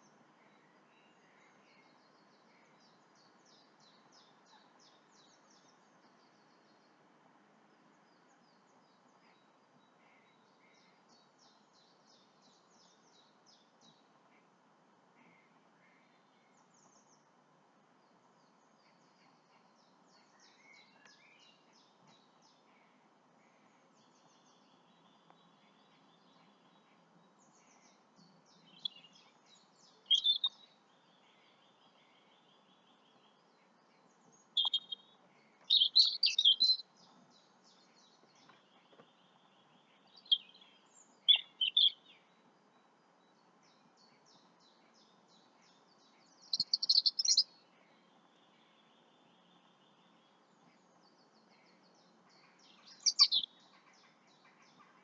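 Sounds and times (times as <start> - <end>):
songbirds chirping: 0.0 - 55.0
faint twittering trills: 15.2 - 55.0.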